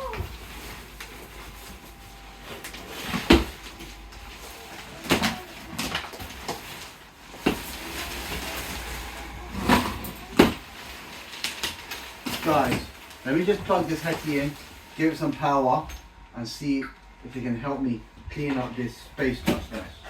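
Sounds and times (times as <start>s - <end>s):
objects knocking and clattering: 0.0s - 15.0s.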